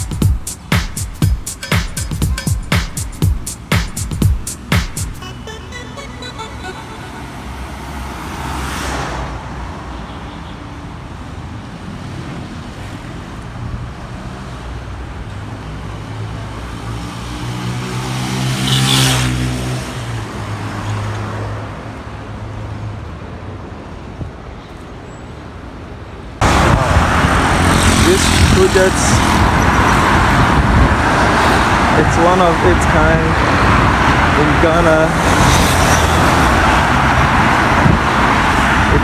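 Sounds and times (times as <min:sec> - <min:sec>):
motorway traffic rumbling: 0:00.0 - 0:39.0
vehicle passing close: 0:06.6 - 0:09.7, 0:16.1 - 0:21.6, 0:26.4 - 0:39.0.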